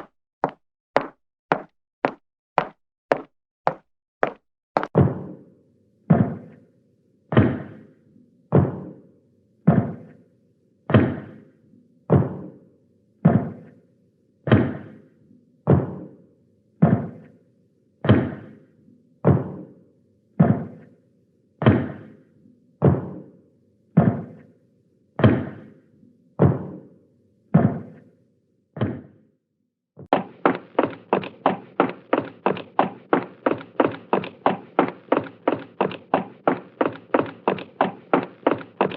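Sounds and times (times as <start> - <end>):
footsteps: 0.0 - 5.0, 30.1 - 38.9.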